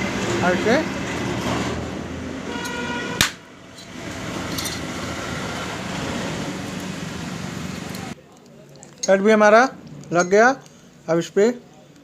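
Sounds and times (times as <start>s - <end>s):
metallic ring: 3.8s - 4.9s.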